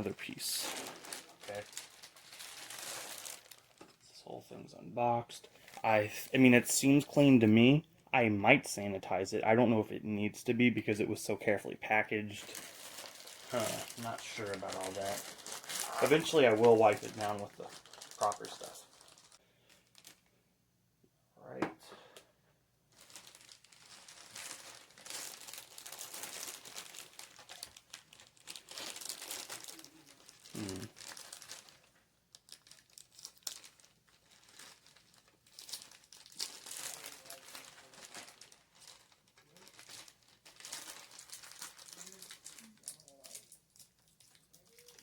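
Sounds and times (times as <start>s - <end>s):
packaging crinkling: 0.0s - 4.0s, 12.4s - 20.3s, 22.9s - 45.0s.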